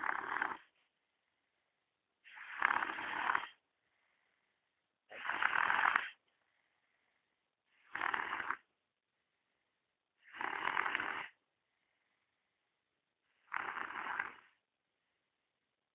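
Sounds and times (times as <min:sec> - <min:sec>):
girl snoring: 0:00.0 - 0:00.7, 0:02.3 - 0:03.6, 0:05.1 - 0:06.2, 0:07.8 - 0:08.7, 0:10.2 - 0:11.4, 0:13.4 - 0:14.6.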